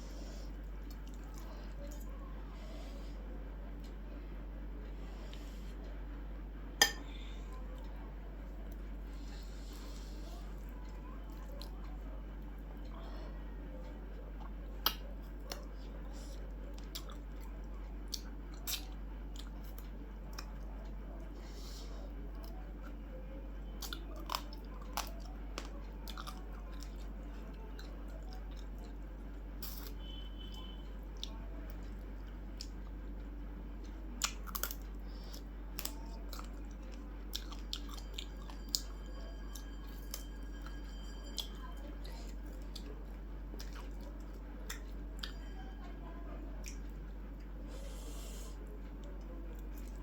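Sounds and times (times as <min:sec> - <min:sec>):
steady low hum: 0:00.0 - 0:50.0
person chewing crunchy food: 0:14.4 - 0:20.7, 0:23.7 - 0:33.1, 0:33.8 - 0:45.4.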